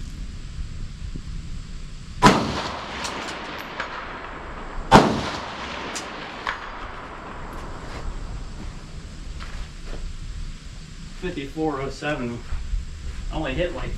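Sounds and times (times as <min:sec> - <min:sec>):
rifle shots with echo: 0:02.2 - 0:08.5.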